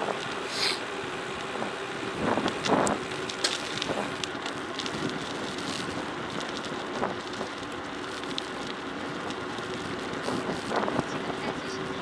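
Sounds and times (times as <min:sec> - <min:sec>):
tyres crunching over gravel: 0:00.0 - 0:12.0
wind noise: 0:01.4 - 0:12.0
small clicks and rattles: 0:02.3 - 0:11.5.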